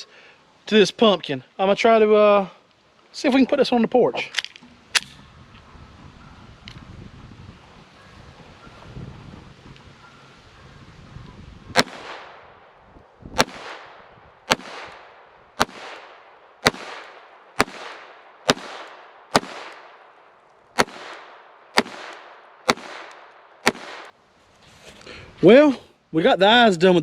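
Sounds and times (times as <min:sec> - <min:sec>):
pistol shots with echo: 0:11.8 - 0:12.4, 0:13.4 - 0:20.1, 0:20.8 - 0:24.1.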